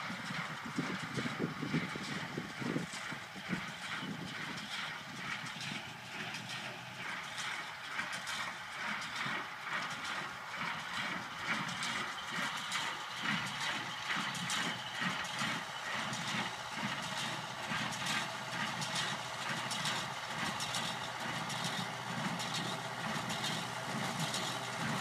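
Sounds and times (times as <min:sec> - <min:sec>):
hay baler clattering: 0:00.0 - 0:25.0
tractor running: 0:00.0 - 0:25.0.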